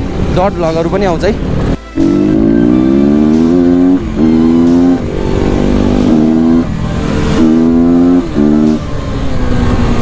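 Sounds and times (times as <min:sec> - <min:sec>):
motorcycle engine under throttle: 0:02.0 - 0:09.0.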